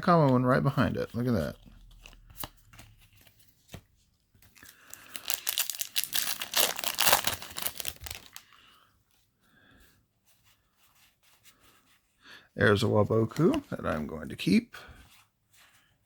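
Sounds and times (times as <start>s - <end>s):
foil wrapper crinkling torn open: 4.5s - 8.5s.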